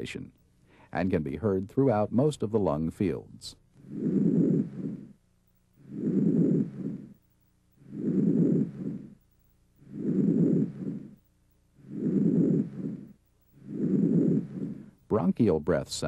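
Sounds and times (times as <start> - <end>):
breath sounds through stethoscope: 0.6 - 1.0, 3.8 - 5.2, 5.8 - 7.2, 7.8 - 9.2, 9.8 - 11.2, 11.8 - 15.1.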